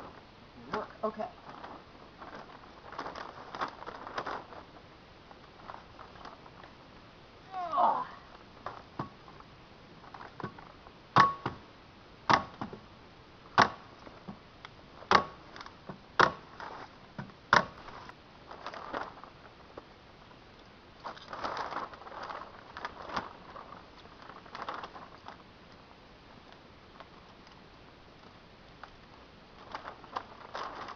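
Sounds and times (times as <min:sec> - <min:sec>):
plastic sheeting crinkling: 0:00.0 - 0:11.0, 0:13.8 - 0:30.9.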